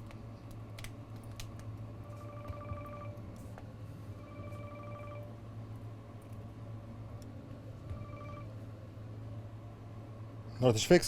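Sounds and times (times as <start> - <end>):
low hum: 0.0 - 10.6
telephone ringing: 2.0 - 3.3, 4.2 - 5.4, 7.9 - 8.6.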